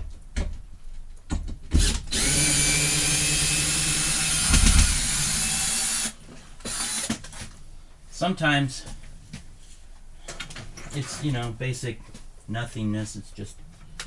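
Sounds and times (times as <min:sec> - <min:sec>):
power drill turning a screw: 0:01.8 - 0:07.2.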